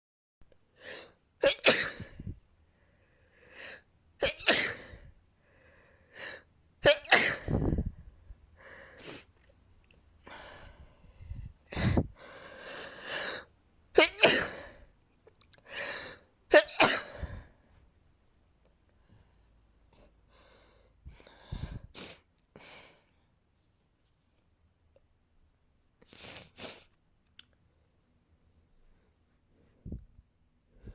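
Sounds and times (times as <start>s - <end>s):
person sneezing: 1.4s - 2.3s, 4.2s - 5.1s, 6.8s - 7.8s, 14.0s - 14.8s, 15.8s - 17.4s.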